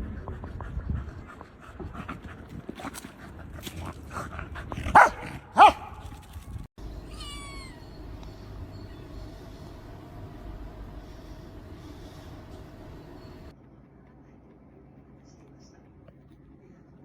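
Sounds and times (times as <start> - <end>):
pet animal calling: 7.0 - 8.8.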